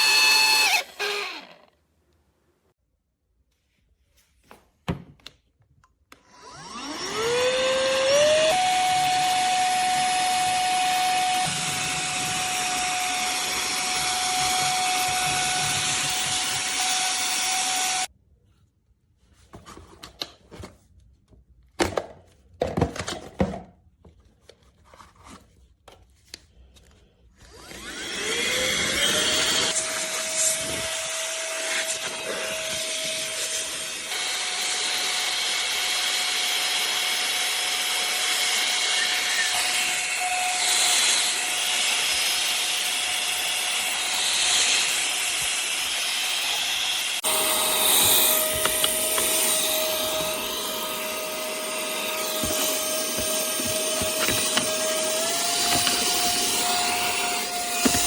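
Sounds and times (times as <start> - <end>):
handheld vacuum cleaner whining: 0.0 - 1.8, 6.2 - 18.1, 27.4 - 58.0
handling clicks and knocks: 52.3 - 54.9.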